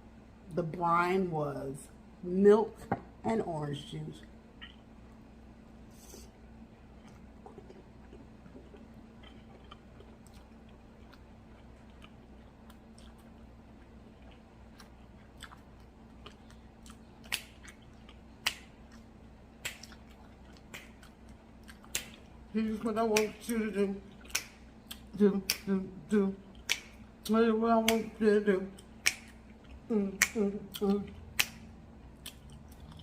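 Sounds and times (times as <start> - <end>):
close chewing mouth clicks: 4.6 - 4.8, 7.0 - 22.4, 24.0 - 25.7, 28.7 - 33.0
wet mouth smacks: 4.6 - 4.8, 16.4 - 22.3, 24.2 - 25.7.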